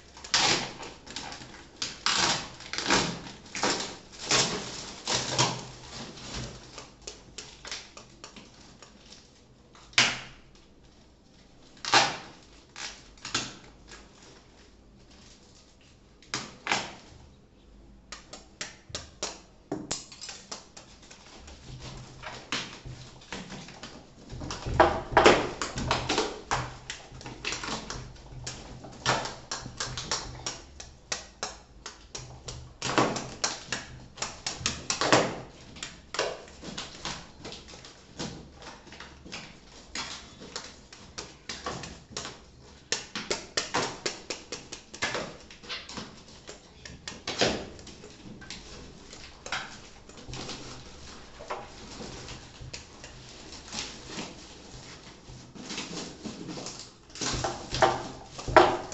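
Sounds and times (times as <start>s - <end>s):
packaging crinkling and rustling: 0.0s - 17.2s, 20.0s - 58.9s.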